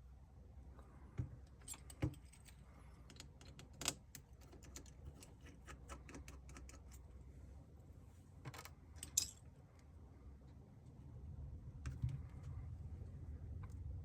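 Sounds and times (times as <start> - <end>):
small tools clicking on phone parts: 1.5 - 7.1.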